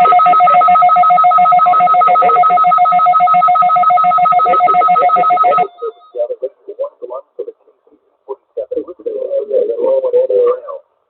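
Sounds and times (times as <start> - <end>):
weather radio alert tone: 0.0 - 6.4.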